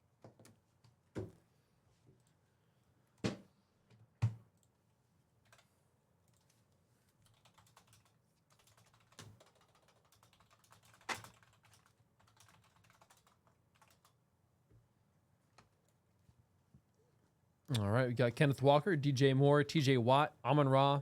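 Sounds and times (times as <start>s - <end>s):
typing on computer keyboard: 5.4s - 5.7s, 7.2s - 14.2s.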